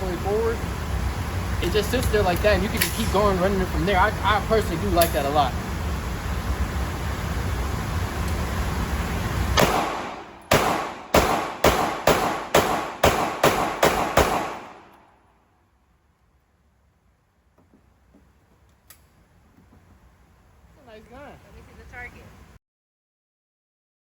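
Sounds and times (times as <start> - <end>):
steady background noise: 0.0 - 22.6
pistol shots: 9.6 - 15.0.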